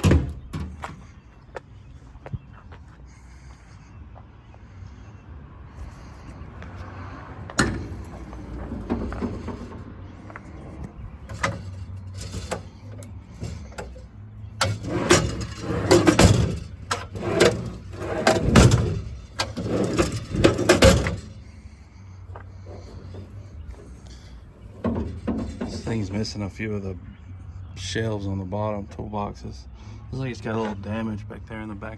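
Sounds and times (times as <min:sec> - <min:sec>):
metal doors knocking and rattling: 0:00.0 - 0:01.0, 0:07.4 - 0:21.6, 0:22.7 - 0:26.2.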